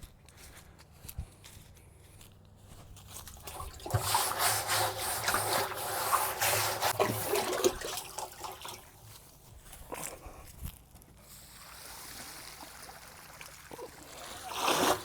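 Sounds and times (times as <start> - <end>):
water sloshing: 3.2 - 9.8, 11.6 - 15.0
scrub brush swishing: 3.3 - 9.2, 11.3 - 15.0.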